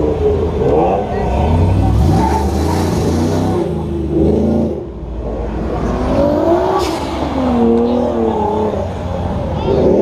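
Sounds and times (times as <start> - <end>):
sports car engine revving: 0.0 - 10.0.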